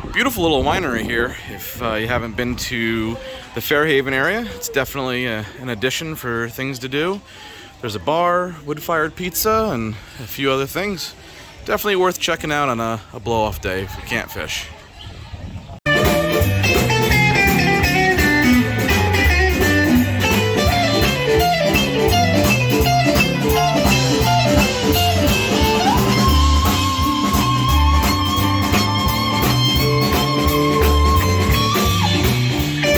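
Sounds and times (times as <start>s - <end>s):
blues-rock music: 15.9s - 32.9s.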